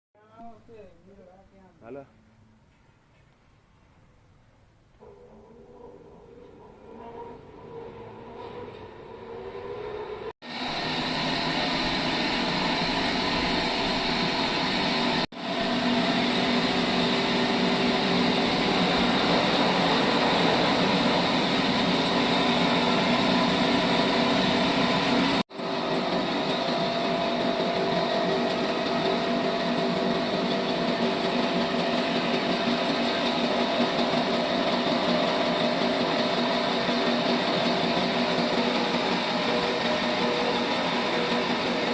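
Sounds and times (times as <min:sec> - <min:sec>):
sawmill machine sawing log: 0:05.6 - 0:41.9
steady machine hum: 0:09.3 - 0:41.9.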